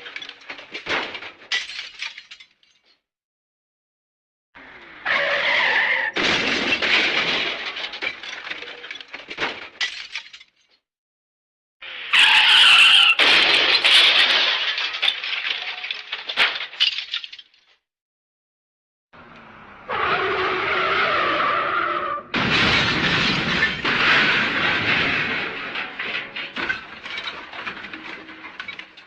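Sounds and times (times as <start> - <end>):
glass breaking crash: 0.0 - 3.0, 6.2 - 10.6, 12.2 - 17.7, 22.4 - 29.0.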